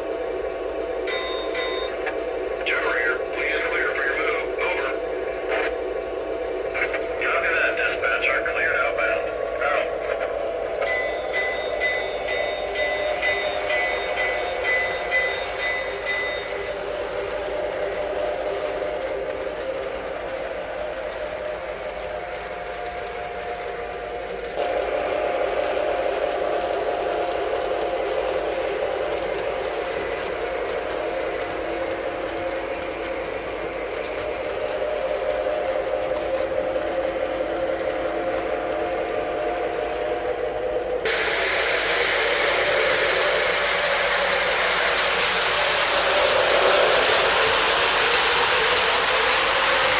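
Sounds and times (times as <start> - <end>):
model train diesel engine sounds: 0.0 - 49.9
locomotive bell ringing: 1.1 - 3.7, 6.8 - 19.0.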